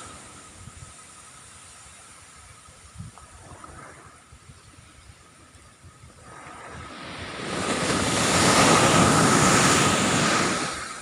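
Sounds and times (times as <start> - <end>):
ocean wave breaking on beach: 0.0 - 0.6, 6.2 - 11.0.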